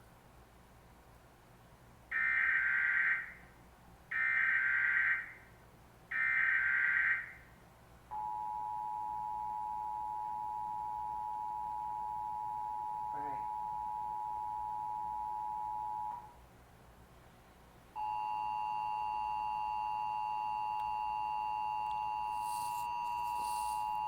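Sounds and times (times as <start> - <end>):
two-tone attention signal: 18.0 - 24.0.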